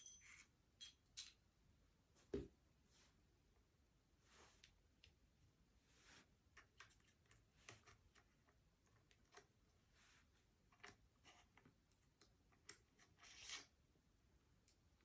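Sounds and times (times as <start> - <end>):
soft scrapes: 2.2 - 3.3, 4.2 - 4.8, 5.7 - 6.4, 9.8 - 10.5.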